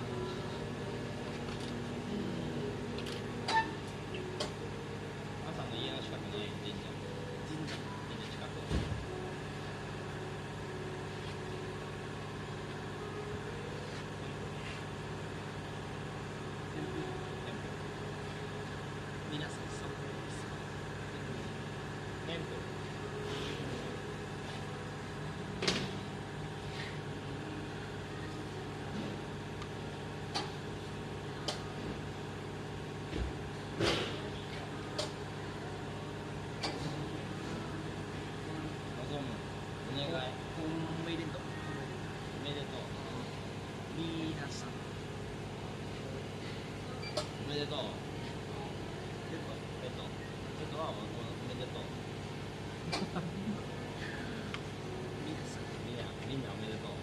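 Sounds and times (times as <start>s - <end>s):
machine hum: 0.0s - 57.0s.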